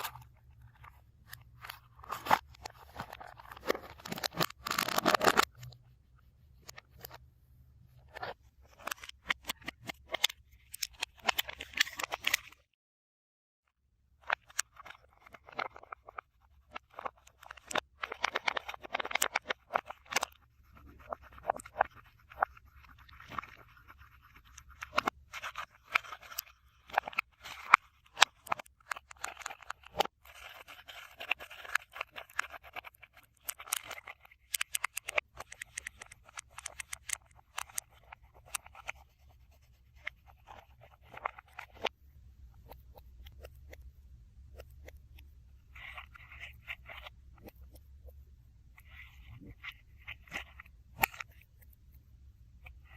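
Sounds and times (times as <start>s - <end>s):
slime scraping and crackling: 1.3s - 5.7s, 14.3s - 41.9s.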